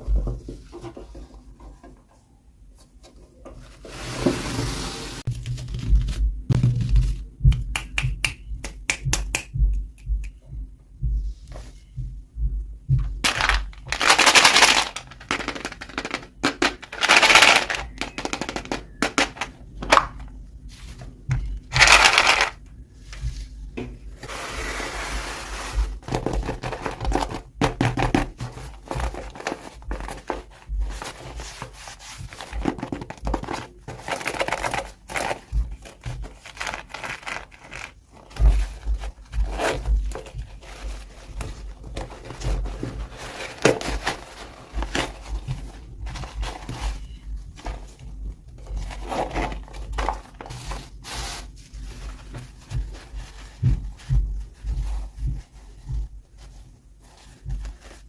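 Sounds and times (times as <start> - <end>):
plastic packaging crinkling: 13.2 - 20.3, 21.7 - 22.6, 32.2 - 50.9.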